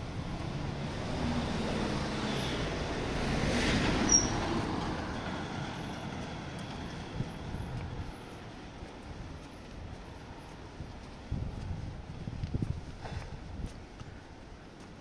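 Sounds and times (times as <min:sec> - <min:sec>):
motor vehicle passing by: 0:00.0 - 0:07.6
wind on microphone: 0:10.7 - 0:14.3.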